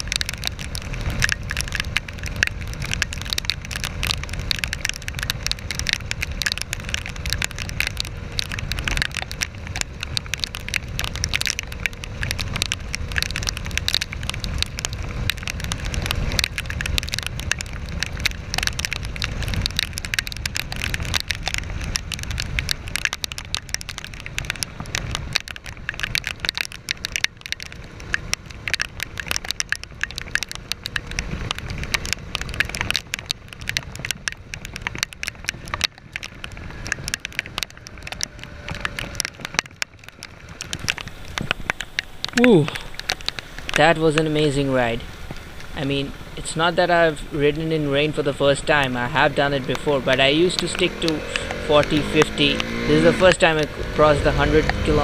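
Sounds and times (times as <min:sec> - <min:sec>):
steady low rumble: 0:00.0 - 0:02.4
heavy rain hitting camera housing: 0:00.0 - 0:25.4, 0:30.0 - 0:55.0.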